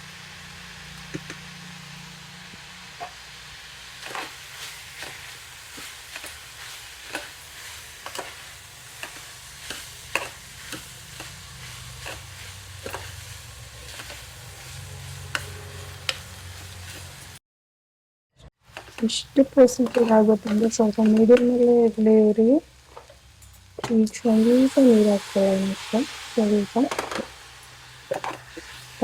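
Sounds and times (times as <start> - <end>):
vegetables sizzling in oil: 0.0 - 17.4, 18.6 - 29.0
spoon scraping a pan: 4.0 - 17.3, 18.7 - 21.6, 26.7 - 29.0.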